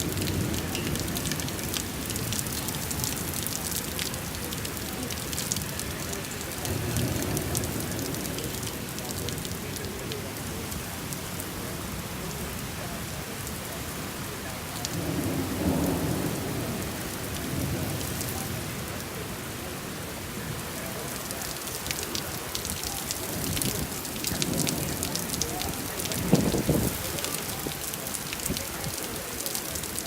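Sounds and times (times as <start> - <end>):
thunder rumbling: 0.0 - 10.7, 14.8 - 19.3, 20.5 - 30.0
steady rain: 0.0 - 30.0.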